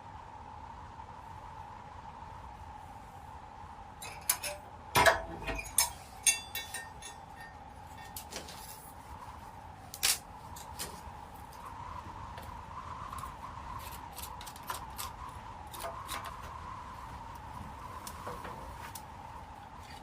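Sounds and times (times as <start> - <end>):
faint steady hum: 0.0 - 20.0
light knocks and clinks: 4.0 - 8.9.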